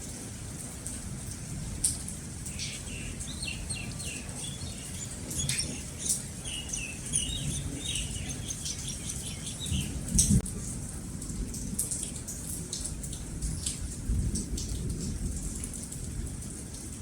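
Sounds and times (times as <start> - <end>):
steady rain: 0.0 - 17.0
small birds chirping: 1.9 - 10.4.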